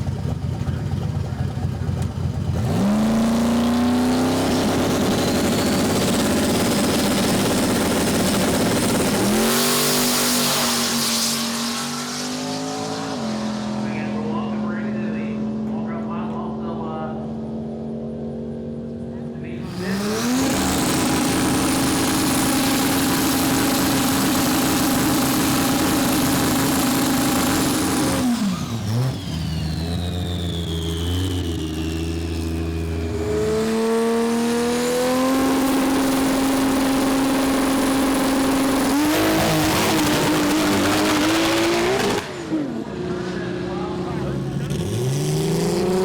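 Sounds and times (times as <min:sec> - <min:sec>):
race car engine revving: 0:00.0 - 0:46.0
high whine winding down: 0:19.6 - 0:42.7.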